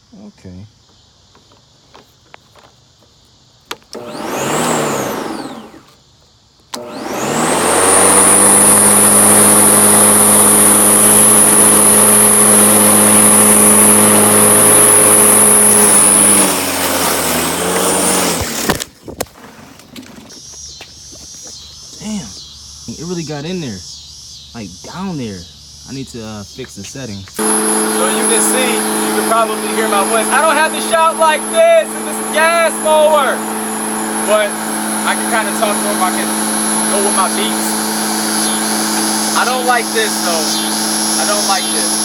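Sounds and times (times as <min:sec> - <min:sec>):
electric lawn mower motor whine: 0:03.6 - 0:06.1, 0:06.7 - 0:21.6, 0:27.4 - 0:42.0.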